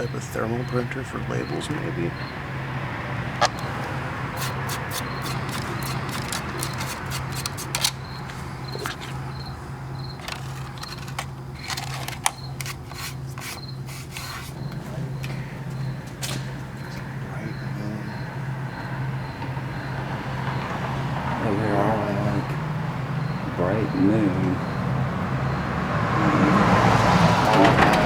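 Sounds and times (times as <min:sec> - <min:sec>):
steady low hum: 0:00.0 - 0:26.8
sharp clicks and knocks: 0:03.4 - 0:09.2.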